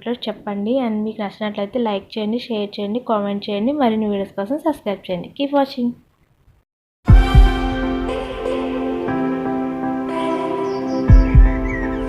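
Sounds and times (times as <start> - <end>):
deep thumps: 7.1 - 8.3
background music sustained notes: 7.1 - 12.0.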